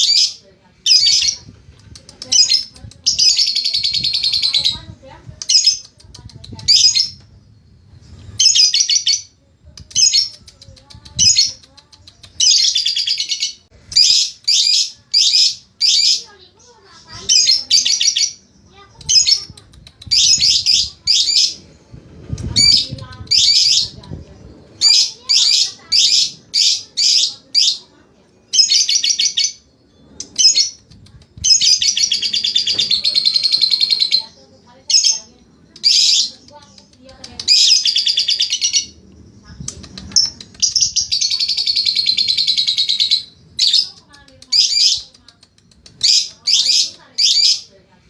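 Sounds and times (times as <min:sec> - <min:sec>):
lovebird chattering: 0:00.0 - 0:07.2, 0:08.3 - 0:21.7, 0:22.4 - 0:47.8
bird harsh chirps: 0:00.0 - 0:47.8
bird chattering trill: 0:28.5 - 0:47.7.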